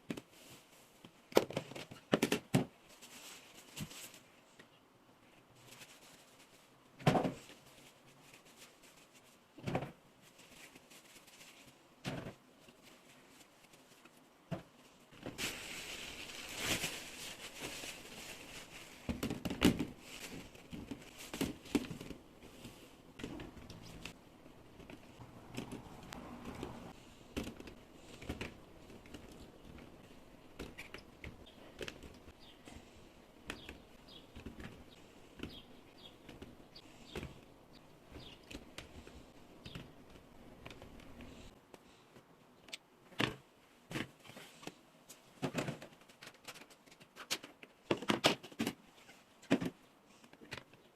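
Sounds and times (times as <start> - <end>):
rustling: 2.8 - 42.0.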